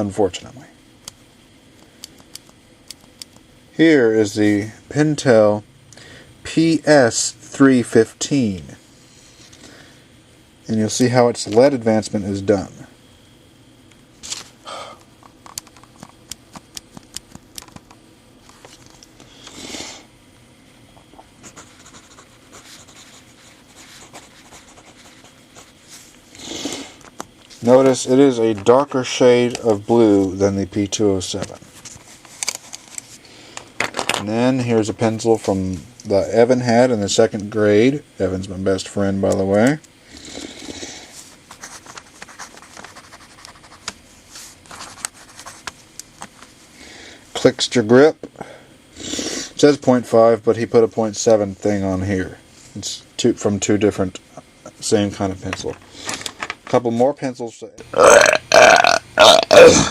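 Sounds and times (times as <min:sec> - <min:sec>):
rubbing and scratching: 0:21.4 - 0:26.2, 0:41.2 - 0:45.9.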